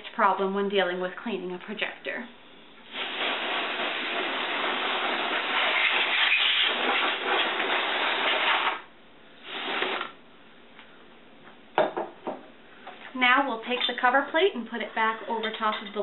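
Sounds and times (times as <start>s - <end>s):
compressed air spraying: 2.9s - 8.8s, 9.4s - 10.1s.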